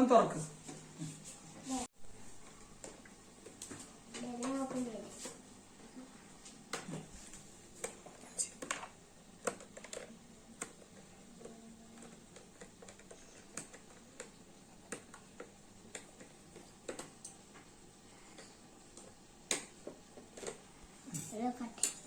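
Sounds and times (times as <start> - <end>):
toy packaging clicks and taps: 7.8 - 17.7, 18.4 - 20.6.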